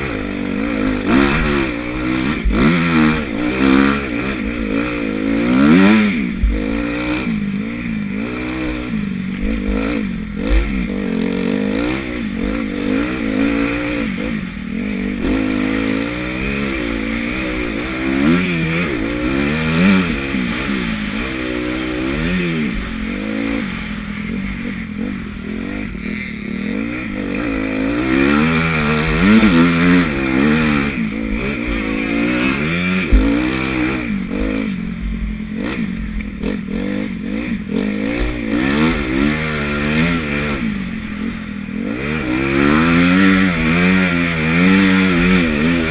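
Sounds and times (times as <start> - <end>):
motorbike engine revving: 0.0 - 45.9.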